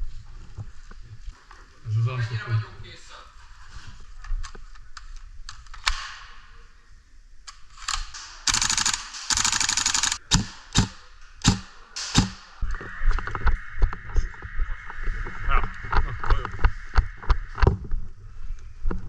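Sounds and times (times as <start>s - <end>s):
rapid-fire clicking bursts: 7.9s - 12.4s
sharp single shots: 7.9s - 12.6s.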